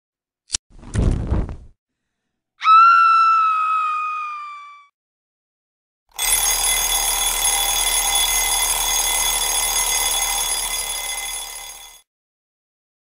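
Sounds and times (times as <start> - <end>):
alarm clock bell ringing: 6.1 - 12.1.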